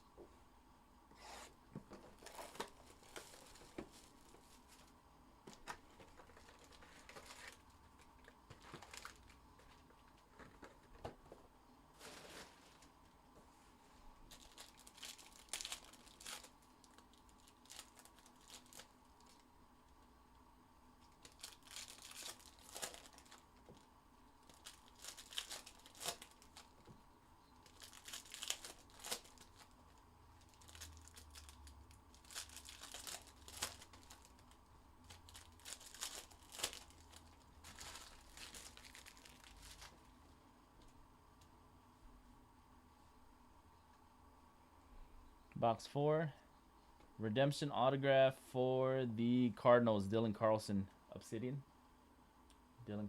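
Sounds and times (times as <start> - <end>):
plastic wrappers crinkling and tearing: 2.1 - 4.9, 5.5 - 10.9, 14.3 - 19.5, 21.1 - 26.9, 27.6 - 40.1.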